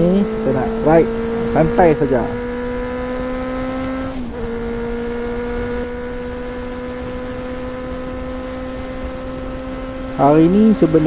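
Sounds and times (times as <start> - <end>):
motorcycle engine droning: 0.0 - 11.0.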